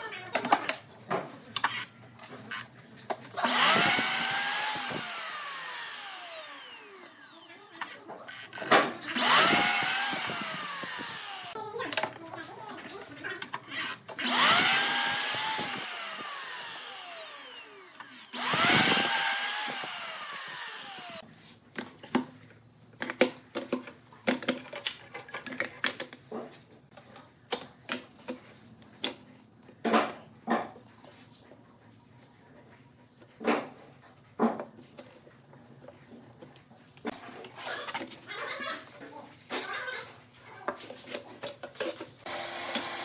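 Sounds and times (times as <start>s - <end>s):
power tool whine: 3.4s - 11.6s, 14.2s - 21.2s, 42.2s - 43.0s.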